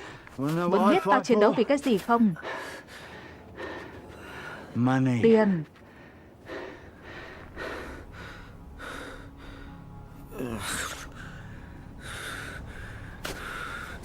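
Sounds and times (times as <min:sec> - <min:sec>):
man breathing hard: 0:05.8 - 0:10.0, 0:10.6 - 0:14.0
low background music: 0:06.3 - 0:14.0.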